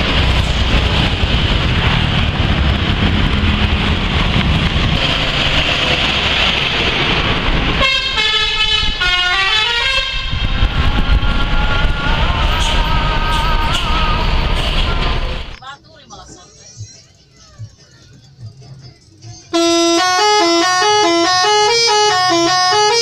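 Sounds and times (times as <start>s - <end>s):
engine and road noise: 0.0s - 23.0s
bus musical air horn: 7.8s - 15.5s, 19.5s - 23.0s.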